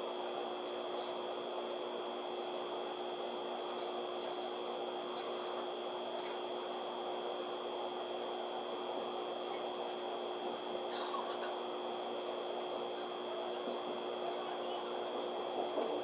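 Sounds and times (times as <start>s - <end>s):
train carriage interior hum: 0.0s - 16.0s.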